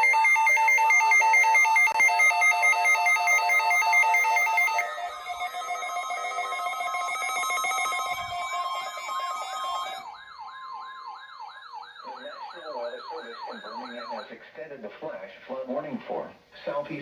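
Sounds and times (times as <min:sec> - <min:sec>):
siren-like electronic sweeps: 0:00.0 - 0:14.4
two-pitch electronic warble: 0:02.0 - 0:10.1.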